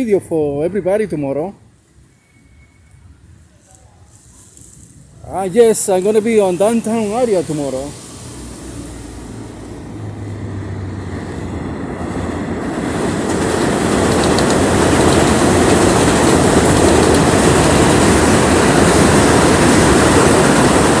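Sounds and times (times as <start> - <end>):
elevated train rumbling: 0.0 - 3.5, 5.0 - 21.0.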